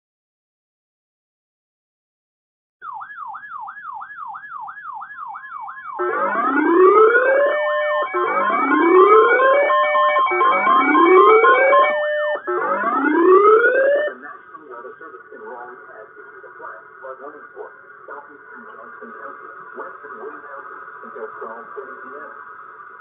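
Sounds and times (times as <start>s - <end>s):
siren fast warble: 2.8s - 14.2s
siren rising wail: 2.8s - 14.3s.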